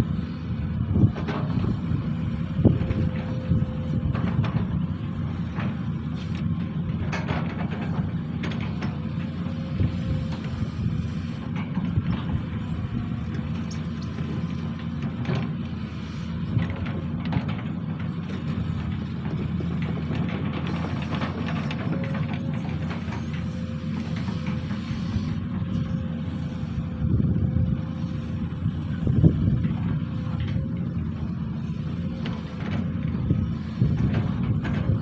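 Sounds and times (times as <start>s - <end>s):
excavator diesel engine running: 0.0s - 35.0s.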